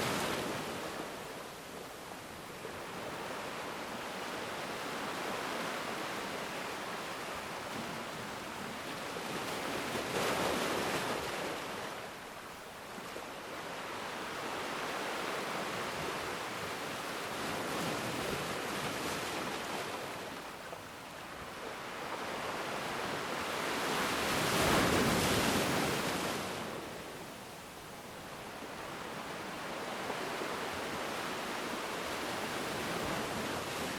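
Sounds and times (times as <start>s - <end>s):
ocean waves breaking: 13.0s - 27.0s.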